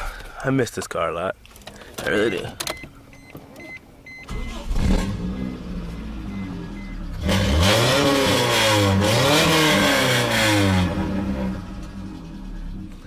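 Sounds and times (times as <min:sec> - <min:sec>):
loud deep car engine revving: 0:04.3 - 0:13.0.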